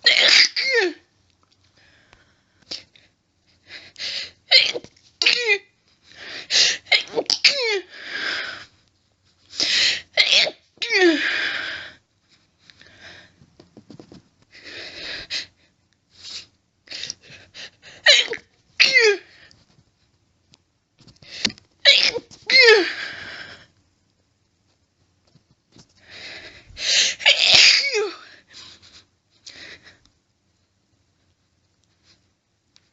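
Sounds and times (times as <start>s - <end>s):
woman sneezing: 0.0s - 1.0s, 4.5s - 5.6s, 18.0s - 19.2s, 21.9s - 22.8s, 27.2s - 28.2s
breaths: 1.7s - 4.4s, 7.9s - 8.8s, 9.5s - 10.1s, 11.2s - 13.5s, 26.0s - 27.2s, 28.2s - 30.1s.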